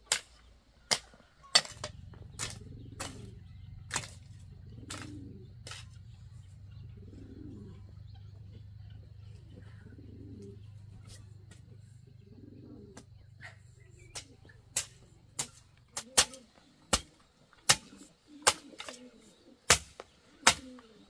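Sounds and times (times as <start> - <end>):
pigeons cooing: 0.0 - 21.0
low hum: 1.6 - 16.0.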